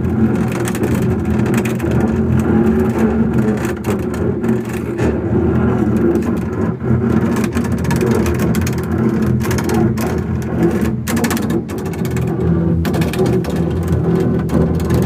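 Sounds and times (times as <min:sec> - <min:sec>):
double bass low drone: 0:00.0 - 0:15.0
rapid rattle of clicks: 0:05.6 - 0:15.0.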